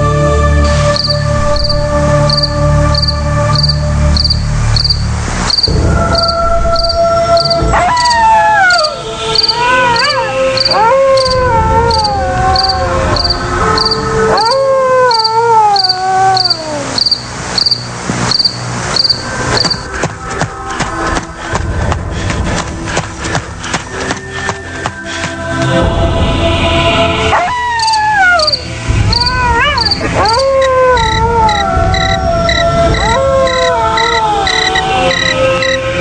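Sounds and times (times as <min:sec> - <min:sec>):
low droning spooky music: 0:00.0 - 0:36.0
crickets chirping: 0:00.9 - 0:20.1, 0:27.8 - 0:35.9
falling wavering wail: 0:05.7 - 0:17.0, 0:27.3 - 0:36.0.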